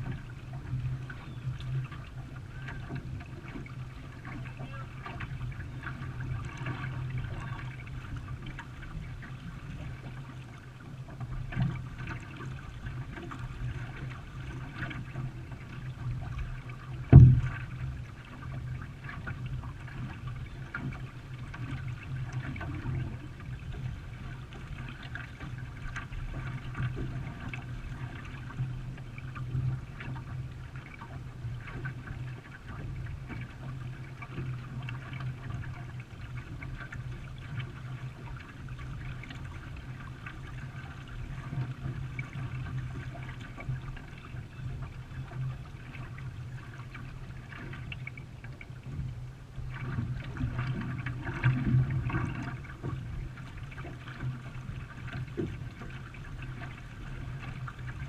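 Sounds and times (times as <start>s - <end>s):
water trickling and splashing: 0.0s - 58.0s.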